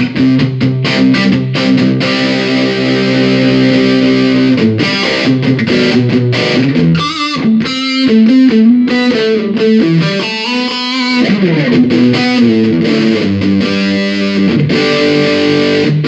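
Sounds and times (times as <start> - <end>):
electric guitar chords and notes: 0.0 - 16.0.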